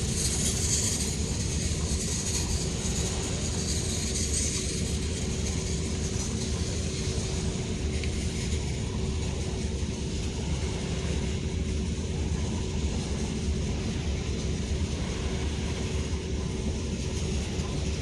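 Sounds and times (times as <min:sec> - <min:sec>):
ferry engine droning: 0:00.0 - 0:18.0
hiss of wind or water: 0:00.0 - 0:18.0.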